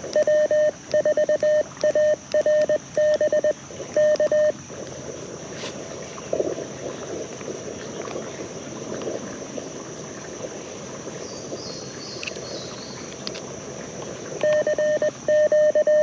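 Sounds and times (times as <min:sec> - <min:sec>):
morse code tone: 0:00.0 - 0:04.5, 0:14.4 - 0:16.0
steady hiss: 0:03.5 - 0:15.3.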